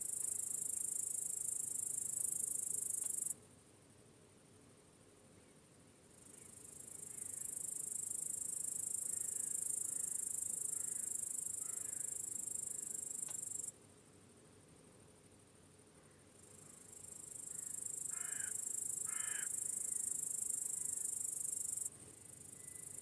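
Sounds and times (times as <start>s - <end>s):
crickets chirping: 0.0s - 3.4s, 4.9s - 23.0s
faint room hiss: 0.0s - 23.0s
faint bird chirps: 22.3s - 23.0s.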